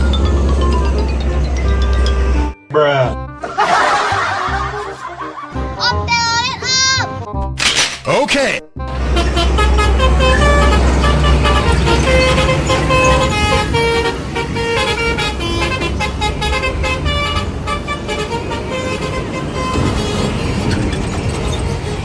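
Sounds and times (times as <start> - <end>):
low engine rumble: 0.0 - 2.6, 8.9 - 22.0
musical air horns playing notes: 0.0 - 2.6, 8.9 - 20.6.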